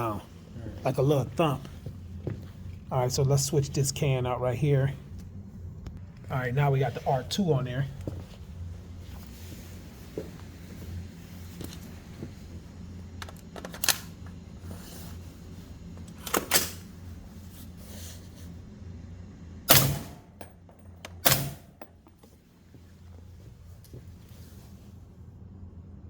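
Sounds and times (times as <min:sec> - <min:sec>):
suppressed rifle shots: 0:19.7 - 0:20.2.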